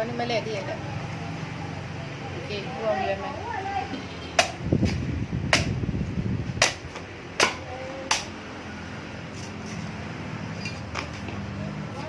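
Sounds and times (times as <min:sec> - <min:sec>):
knocks on a coconut: 0:04.4 - 0:05.8, 0:06.6 - 0:08.4.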